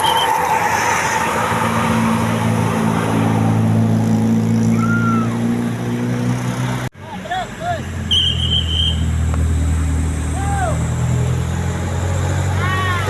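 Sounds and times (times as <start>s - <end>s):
passing road traffic: 0.0s - 13.0s
bus diesel engine running: 6.7s - 13.0s.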